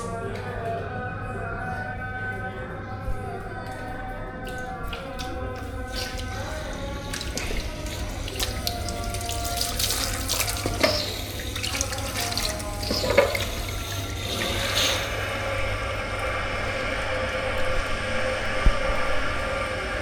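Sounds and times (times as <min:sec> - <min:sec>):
tap water running into sink: 0:04.5 - 0:15.8.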